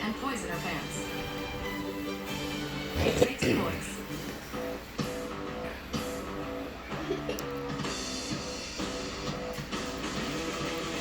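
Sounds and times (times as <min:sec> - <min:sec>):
guitar and drums music: 0:00.3 - 0:11.0.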